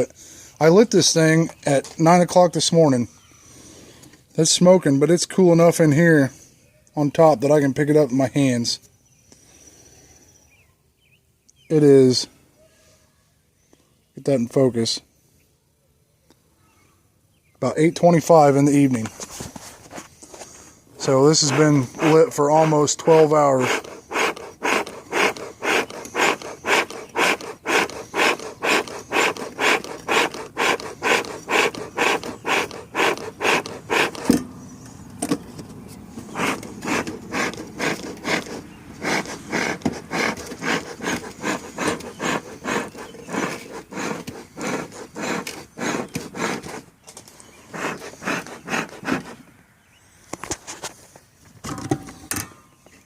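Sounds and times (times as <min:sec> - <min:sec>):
bellows pumping puffs of air: 0:19.3 - 0:35.2, 0:36.1 - 0:49.5.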